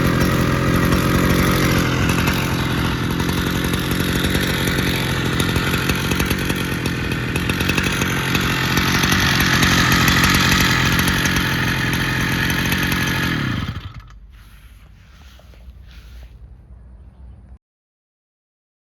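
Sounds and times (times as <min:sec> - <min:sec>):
brushcutter engine at high revs: 0:00.0 - 0:14.6.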